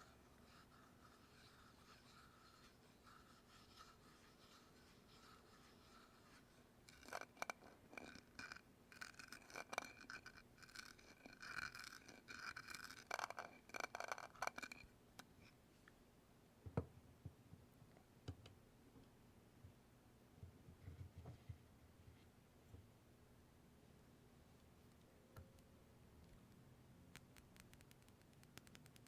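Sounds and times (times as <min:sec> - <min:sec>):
scratching on hard object: 0:00.0 - 0:15.6.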